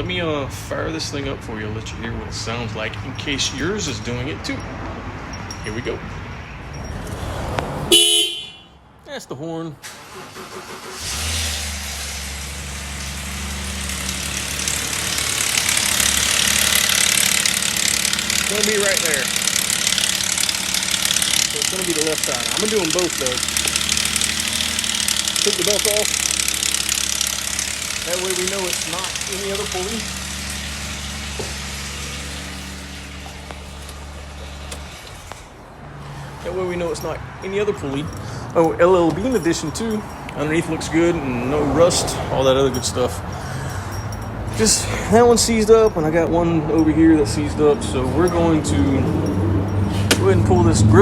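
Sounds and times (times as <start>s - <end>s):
car engine starting and idling: 9.8s - 51.0s
high rattling: 10.2s - 35.5s.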